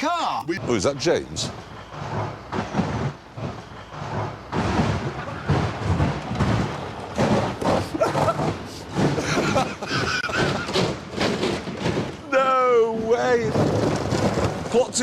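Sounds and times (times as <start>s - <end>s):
wheezing laughter: 9.2s - 10.8s.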